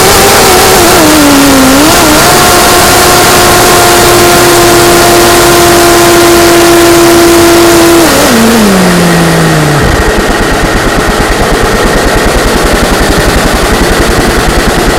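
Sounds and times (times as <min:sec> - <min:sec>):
rapid low fluttering: 0:07.3 - 0:14.9
wind rush: 0:08.1 - 0:14.9.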